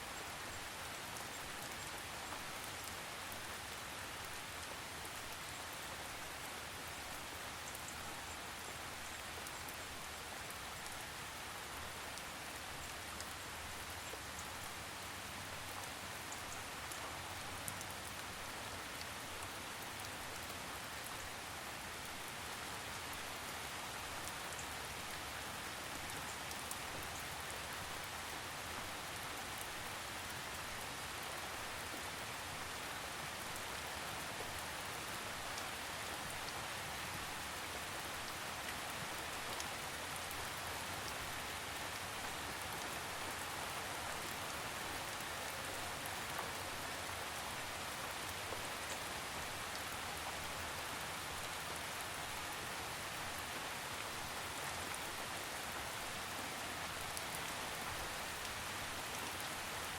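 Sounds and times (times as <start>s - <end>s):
steady rain falling: 0.0s - 59.9s
faint drip ticks: 7.5s - 11.0s, 12.2s - 15.0s, 15.7s - 21.1s.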